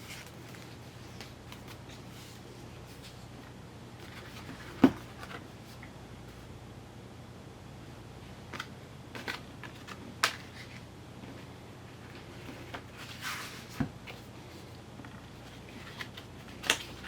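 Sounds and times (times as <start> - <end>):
paper rustle: 0.0 - 3.3, 12.1 - 17.0
steady low hum: 0.0 - 17.0.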